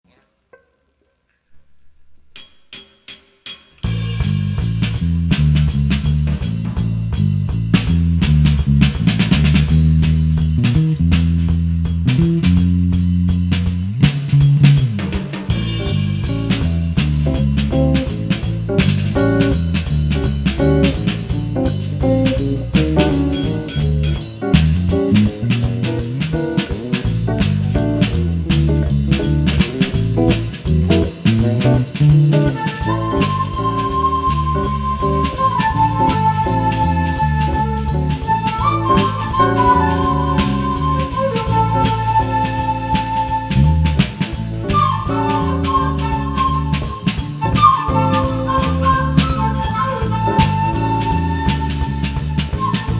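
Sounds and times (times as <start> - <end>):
drum kit: 1.6 - 52.9
bass guitar line: 3.8 - 52.9
funk band playing: 3.8 - 52.9
flute held note: 29.5 - 52.9.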